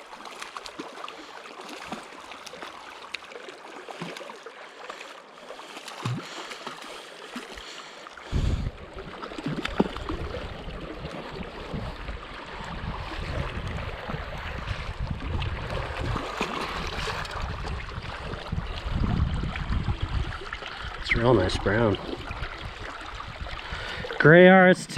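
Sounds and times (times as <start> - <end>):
wind buffeting microphone: 8.3 - 24.2.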